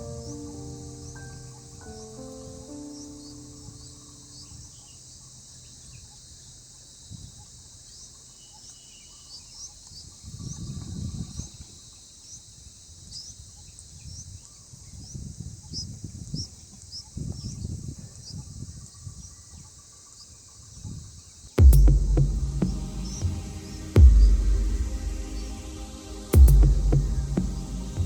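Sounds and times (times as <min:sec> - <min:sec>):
crickets chirping: 0:00.0 - 0:28.0
low rumbling: 0:21.6 - 0:28.0.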